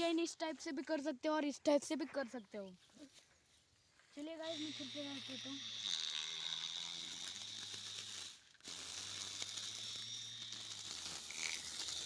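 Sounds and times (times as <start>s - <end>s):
lawn mower blade cutting grass: 4.4s - 12.0s.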